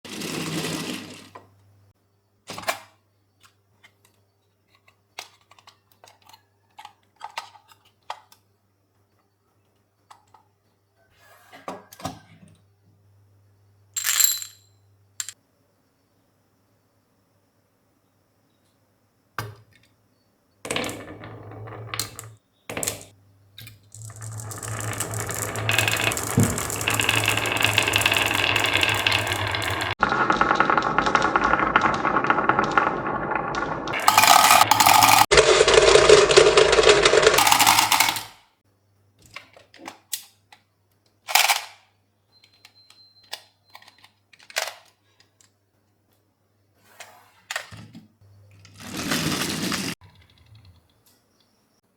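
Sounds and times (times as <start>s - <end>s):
marbles rolling rattle: 0.1s - 1.4s, 23.9s - 38.4s, 48.7s - 50.0s
marbles clicking: 23.9s - 38.3s.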